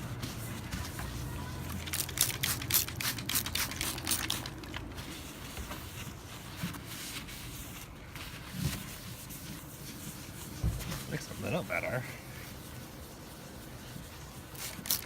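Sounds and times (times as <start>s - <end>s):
rubbing strokes on headlight lens: 5.0s - 15.0s.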